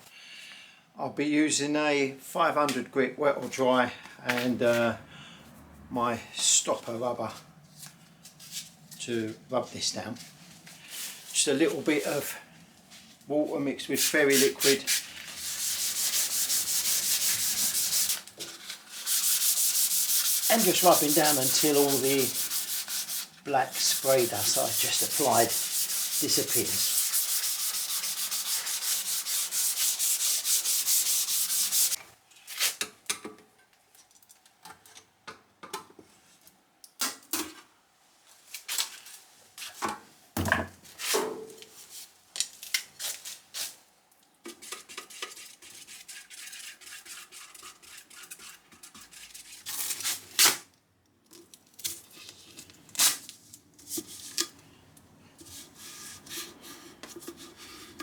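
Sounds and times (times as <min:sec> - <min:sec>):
sanding block knocks: 0:14.0 - 0:18.2, 0:18.9 - 0:32.0
sandpaper rubbing on paint: 0:14.0 - 0:32.0
short sanding scrapes: 0:14.0 - 0:32.0.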